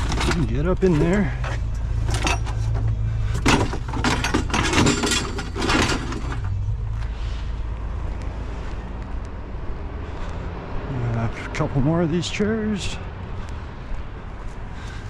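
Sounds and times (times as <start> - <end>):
metal chairs clattering: 0.0 - 6.6
van engine humming: 0.0 - 15.0.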